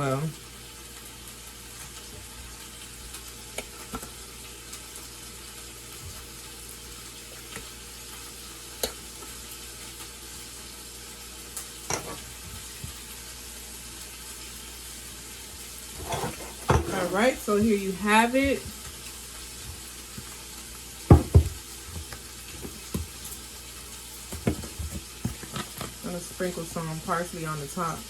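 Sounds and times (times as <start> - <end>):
food sizzling in a pan: 0.0 - 28.0
utensil tapping a pan: 21.1 - 23.1.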